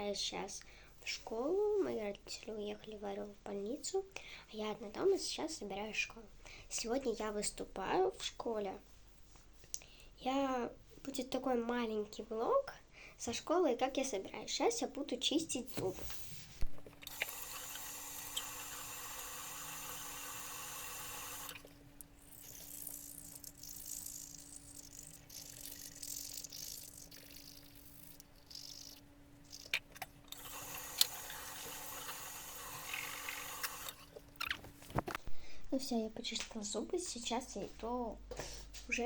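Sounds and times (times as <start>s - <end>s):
faint steady hum: 0.0s - 39.0s
toothbrush scrubbing: 17.1s - 34.6s.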